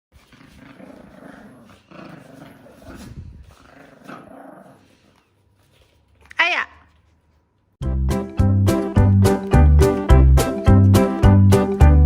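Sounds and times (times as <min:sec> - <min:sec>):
puppies growling: 0:00.2 - 0:05.4.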